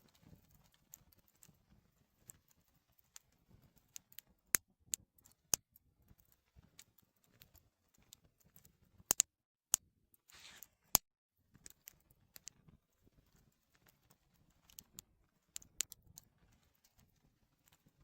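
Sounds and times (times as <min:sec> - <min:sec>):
short hiss: 0:10.3 - 0:10.8.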